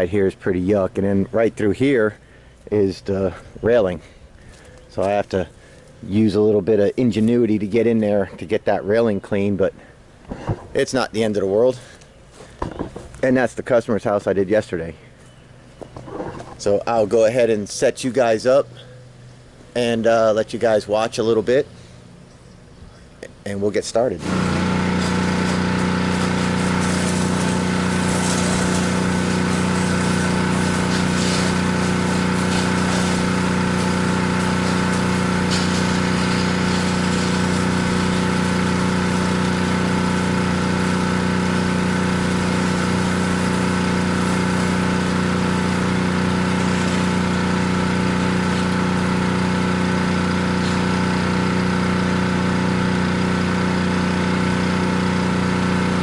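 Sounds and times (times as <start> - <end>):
pressure washer engine running: 23.9 - 56.0
water spray hissing: 24.2 - 56.0.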